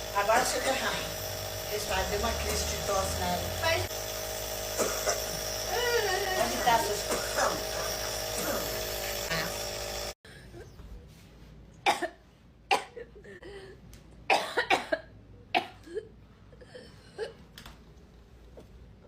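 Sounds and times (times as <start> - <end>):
person coughing: 4.8 - 6.0, 6.8 - 9.6, 14.3 - 16.1.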